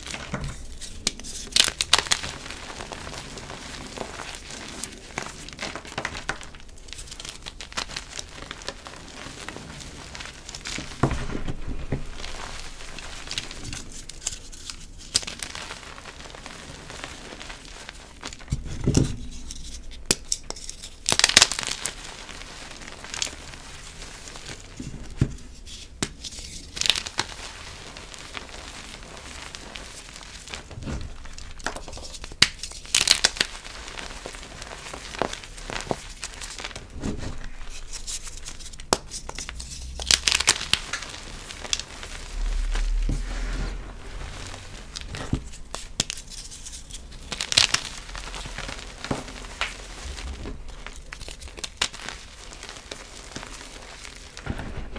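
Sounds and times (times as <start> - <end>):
chalk crackling and crumbling: 0.0 - 54.9
chalk blocks crunching: 24.4 - 54.9.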